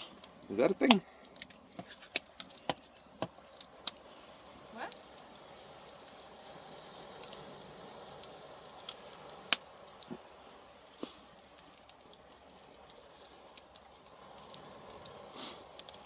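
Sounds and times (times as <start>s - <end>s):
fire crackling: 0.0s - 16.0s.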